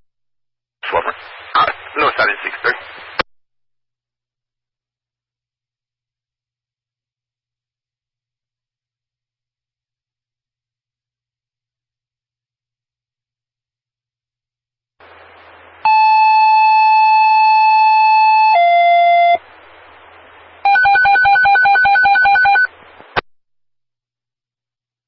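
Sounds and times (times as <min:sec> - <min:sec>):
radio hiss: 0:00.8 - 0:03.2
two-tone paging tones: 0:20.7 - 0:22.7.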